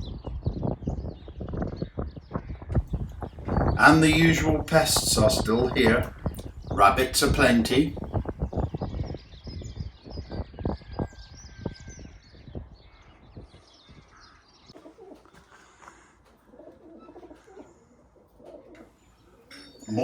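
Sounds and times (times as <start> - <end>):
small birds chirping: 0.0 - 20.0
pigeons cooing: 14.8 - 20.0.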